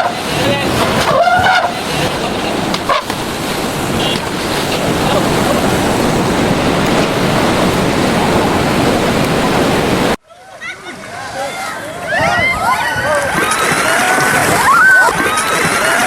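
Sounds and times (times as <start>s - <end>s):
loud steady rushing noise: 0.0s - 10.2s.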